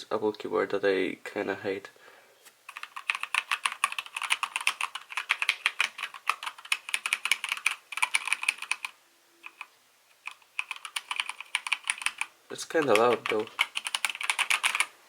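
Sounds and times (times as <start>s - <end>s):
mechanical keyboard typing: 2.7s - 9.7s, 10.3s - 14.9s.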